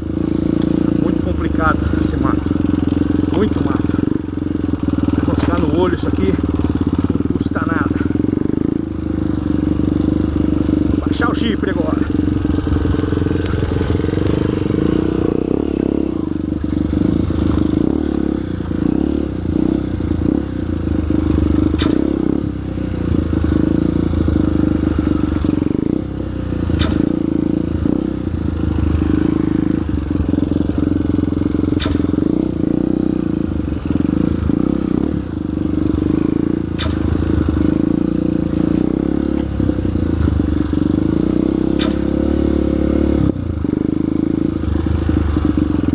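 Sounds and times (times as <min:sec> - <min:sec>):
motorcycle engine revving: 0:00.0 - 0:45.9
sharp short click: 0:21.8 - 0:22.3, 0:26.8 - 0:27.2, 0:31.8 - 0:32.6, 0:36.8 - 0:37.3, 0:41.8 - 0:42.2.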